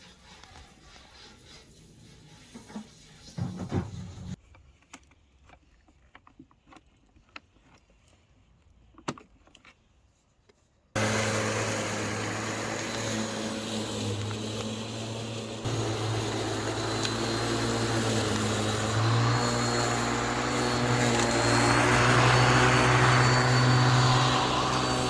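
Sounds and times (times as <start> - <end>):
electric grass trimmer whirring: 11.0 - 25.0.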